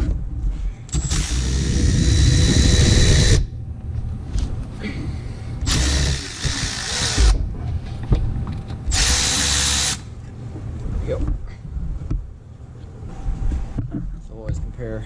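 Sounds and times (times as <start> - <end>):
low rumble and clatter: 0.0 - 9.2
power tool whining: 0.9 - 3.5, 5.6 - 7.4, 8.9 - 10.1.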